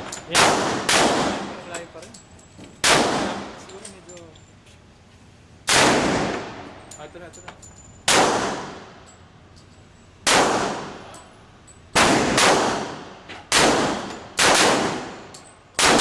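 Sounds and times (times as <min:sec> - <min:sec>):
echoing gunshots: 0:00.0 - 0:01.6, 0:02.8 - 0:03.6, 0:05.7 - 0:06.8, 0:08.1 - 0:09.0, 0:10.2 - 0:11.0, 0:11.9 - 0:16.0.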